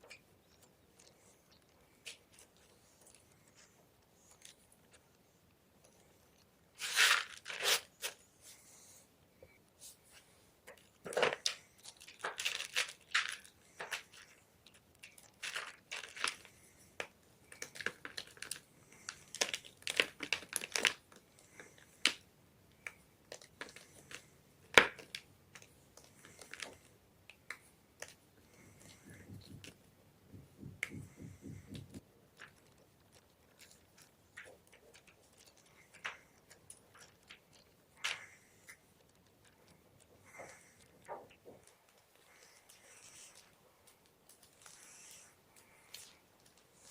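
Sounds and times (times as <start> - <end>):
chalk crunching and crackling: 6.7 - 8.7.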